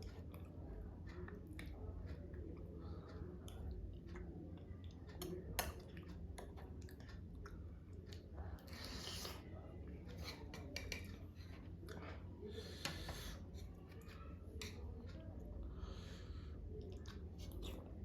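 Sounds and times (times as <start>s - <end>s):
person chewing food: 0.0s - 15.0s, 15.9s - 18.0s
low steady hum: 0.0s - 18.0s.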